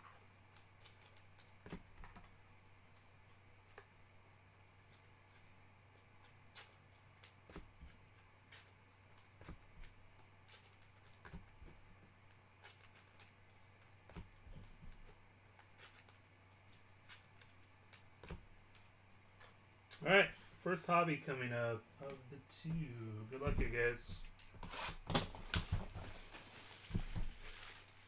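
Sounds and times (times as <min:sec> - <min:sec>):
trading cards rustling: 0:00.6 - 0:01.9, 0:12.5 - 0:14.8, 0:15.4 - 0:28.0.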